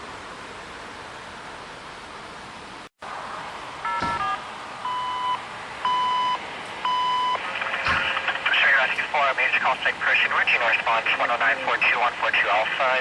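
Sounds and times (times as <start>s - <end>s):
long even beeps: 3.8s - 7.4s
radio alert tones: 3.8s - 13.0s.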